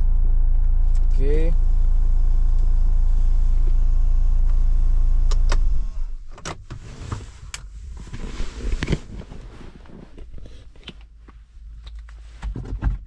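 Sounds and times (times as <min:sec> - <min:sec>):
minivan engine idling: 0:00.0 - 0:06.3.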